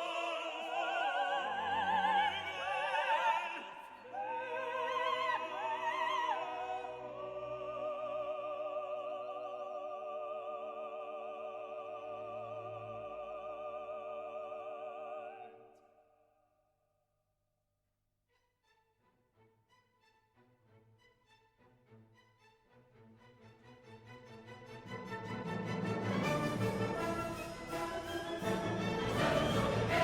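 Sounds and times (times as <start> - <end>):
operatic singing with vibrato: 0.0 - 15.8, 25.1 - 30.0
classical music: 18.4 - 30.0.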